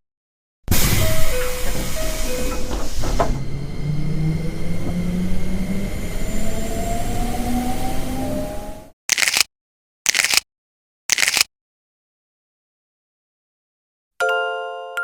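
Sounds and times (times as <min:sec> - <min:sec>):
rumbling of train wheels: 0:00.9 - 0:06.2
electric train motor whine: 0:01.0 - 0:08.8.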